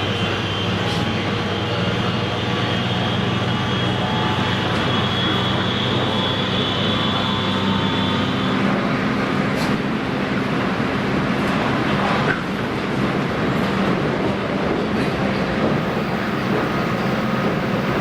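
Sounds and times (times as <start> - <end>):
electric train hum: 0.0 - 18.0
high motor whine: 15.8 - 18.0.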